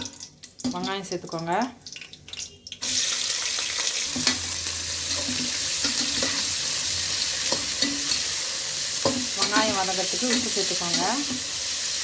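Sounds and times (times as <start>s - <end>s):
onions sizzling in oil: 2.8s - 12.0s.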